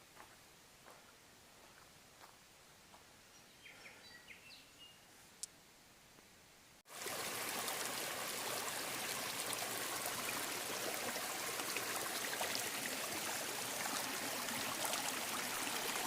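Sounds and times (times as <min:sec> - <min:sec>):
stream water rushing: 0:06.9 - 0:16.0.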